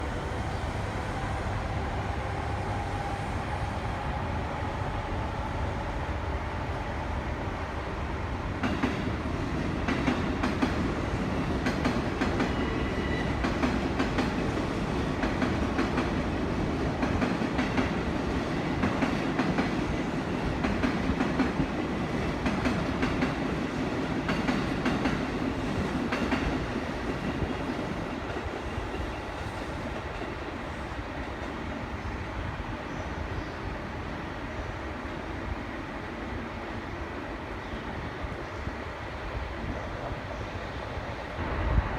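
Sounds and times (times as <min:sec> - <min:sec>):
electric locomotive whine: 0:00.0 - 0:41.9
train wheels clacking on rail joints: 0:17.0 - 0:30.4.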